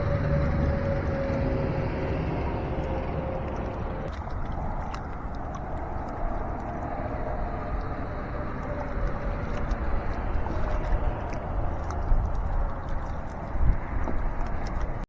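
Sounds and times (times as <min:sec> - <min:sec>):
river water rushing: 0:00.0 - 0:15.0.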